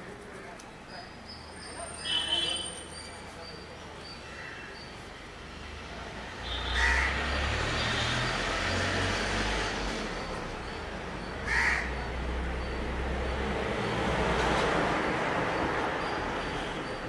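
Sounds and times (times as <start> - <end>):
crow cawing: 6.7 - 7.3, 11.4 - 12.1.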